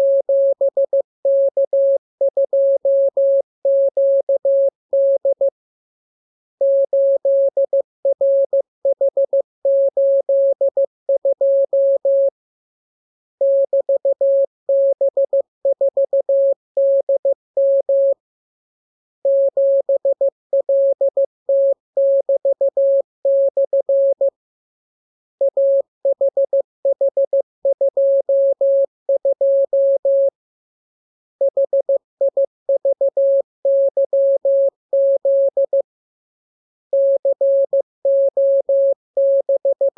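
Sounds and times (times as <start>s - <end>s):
morse code beeps: 31.4s - 35.8s, 37.0s - 39.9s.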